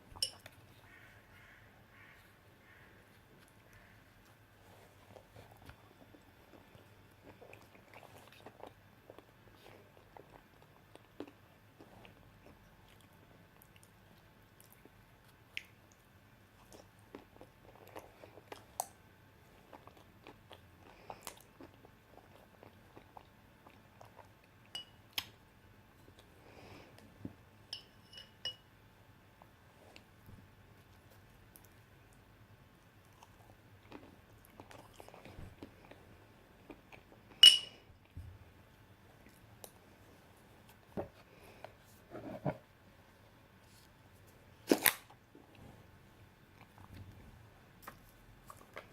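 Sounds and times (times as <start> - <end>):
chewing and wet mouth sounds: 2.6 - 25.4, 30.8 - 37.4, 46.4 - 48.9
utensil clinking on dish: 27.7 - 28.6, 37.4 - 37.8.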